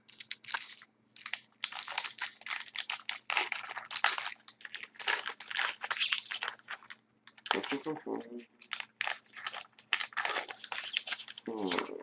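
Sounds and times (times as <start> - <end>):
wrapper crinkling and rustling: 0.0 - 8.0, 8.6 - 12.0
cards shuffled in hands: 10.1 - 12.0.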